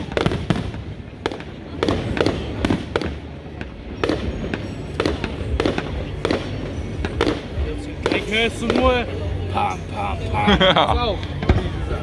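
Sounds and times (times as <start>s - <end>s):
fireworks bangs and pops: 0.0s - 9.1s.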